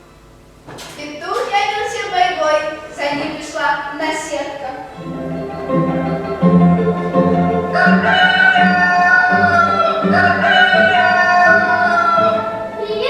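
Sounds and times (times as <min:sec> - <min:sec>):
low musical accompaniment: 0:04.6 - 0:13.0
person singing long notes: 0:06.3 - 0:13.0.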